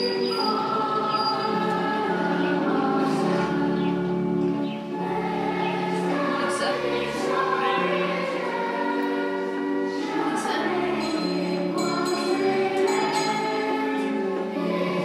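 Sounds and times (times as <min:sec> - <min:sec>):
choir singing: 0:00.0 - 0:15.0.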